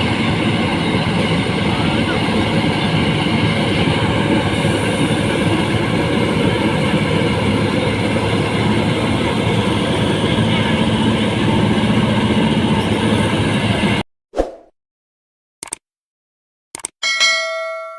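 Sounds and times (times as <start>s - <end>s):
short ding: 17.0s - 17.9s.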